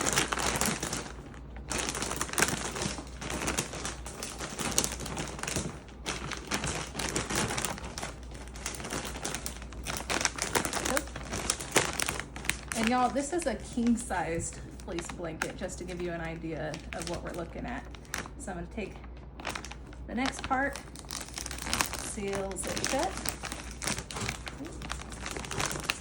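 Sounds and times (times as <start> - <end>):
plastic bag crinkling: 0.0 - 26.0
blanket rustling: 19.4 - 26.0.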